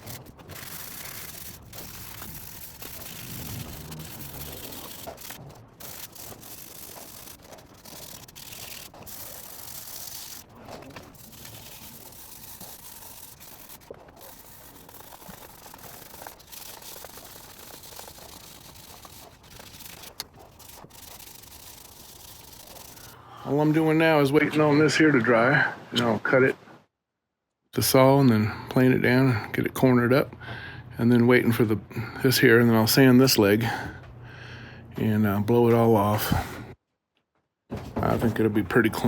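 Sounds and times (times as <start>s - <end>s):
sandpaper rubbing on wood: 0.0s - 23.2s.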